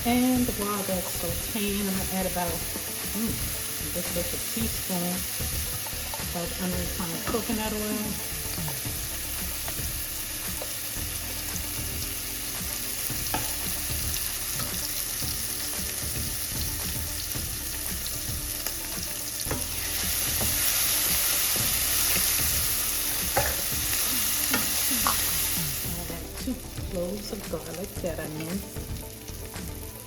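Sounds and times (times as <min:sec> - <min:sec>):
vegetables sizzling in hot oil: 0:00.0 - 0:30.0.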